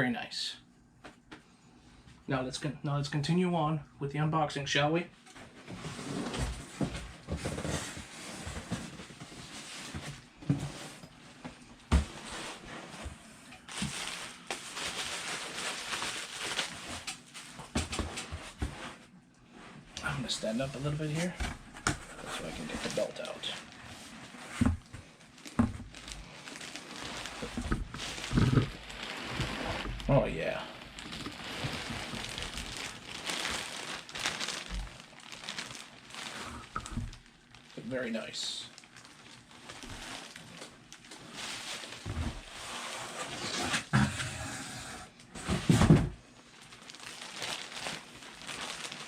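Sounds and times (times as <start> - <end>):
packaging rustling and crinkling: 5.3 - 19.1, 20.0 - 44.3, 45.2 - 49.0.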